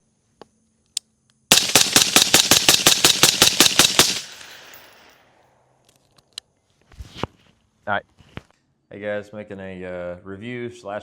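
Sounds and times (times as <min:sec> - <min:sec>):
rifle firing a fast burst: 0:01.5 - 0:05.1
gunshot echo: 0:01.5 - 0:05.2.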